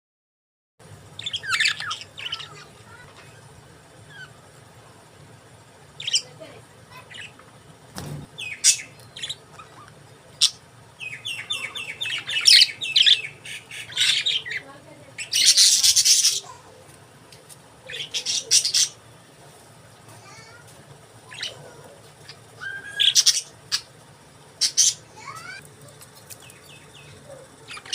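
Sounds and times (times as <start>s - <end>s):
budgerigars chirping and squawking: 1.1s - 4.5s, 6.0s - 7.4s, 8.0s - 16.7s, 17.8s - 19.0s, 21.2s - 27.9s.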